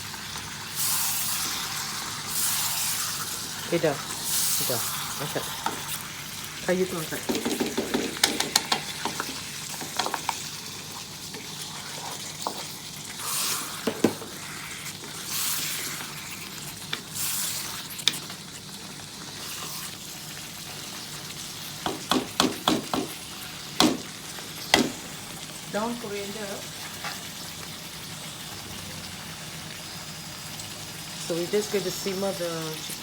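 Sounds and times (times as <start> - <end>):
food sizzling in a pan: 0.0 - 33.0
utensil stirring a pan: 0.5 - 25.9.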